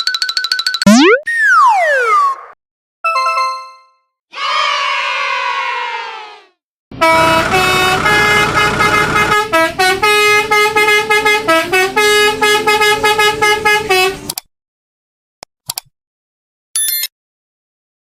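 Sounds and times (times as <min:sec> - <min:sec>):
honking horn-like tune: 0:07.0 - 0:14.3.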